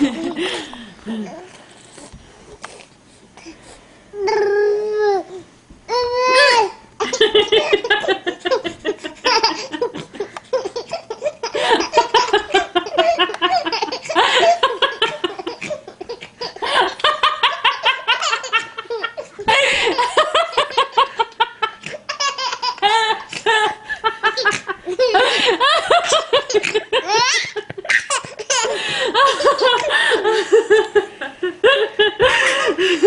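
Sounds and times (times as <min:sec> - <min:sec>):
woman laughing: 0:00.0 - 0:01.4, 0:07.0 - 0:10.4, 0:11.3 - 0:22.0, 0:22.7 - 0:27.9, 0:28.5 - 0:33.0
baby laughing: 0:05.9 - 0:30.1.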